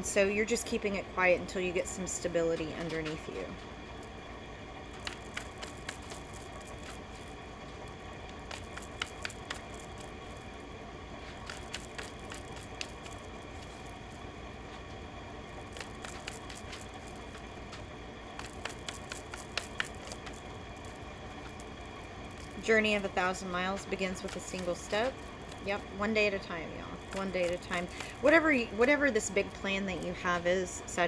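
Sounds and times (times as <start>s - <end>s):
low room hum: 0.0s - 31.0s
light clicks and taps: 4.9s - 10.6s, 11.2s - 30.2s.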